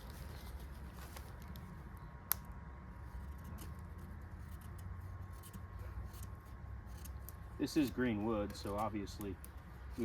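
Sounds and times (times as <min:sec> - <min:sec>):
knife scraping wood: 0:03.2 - 0:10.0.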